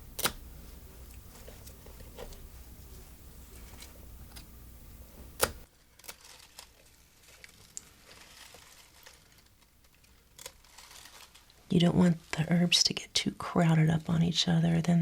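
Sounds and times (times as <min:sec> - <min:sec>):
scissors snipping stems: 0:00.0 - 0:00.5, 0:05.3 - 0:06.2
herb fronds rustling: 0:05.1 - 0:12.8.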